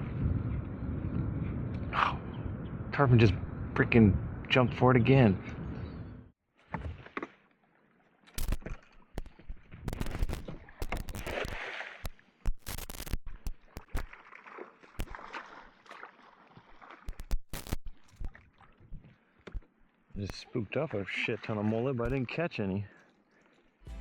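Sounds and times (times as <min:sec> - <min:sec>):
water splashing: 0:08.2 - 0:22.5
fishing gear knocks and clicks: 0:08.3 - 0:14.2, 0:17.1 - 0:20.3.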